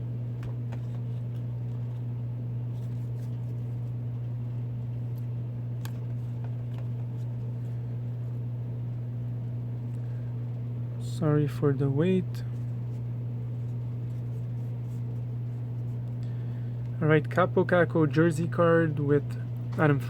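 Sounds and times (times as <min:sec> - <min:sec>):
low electrical hum: 0:00.0 - 0:20.0
cards clicking and tapping: 0:00.4 - 0:02.0.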